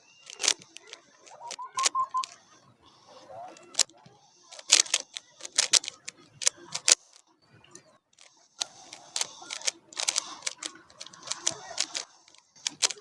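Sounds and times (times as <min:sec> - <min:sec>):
puzzle cube plastic clicking: 0:00.2 - 0:02.4, 0:03.5 - 0:03.9, 0:04.5 - 0:07.2, 0:08.2 - 0:13.0.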